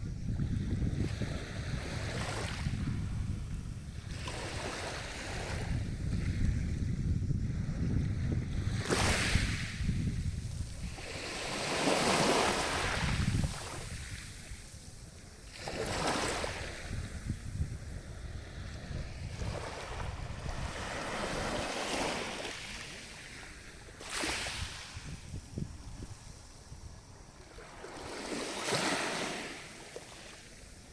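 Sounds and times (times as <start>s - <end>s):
wind rumbling on microphone: 0.0s - 29.5s
sea waves breaking: 19.4s - 25.0s.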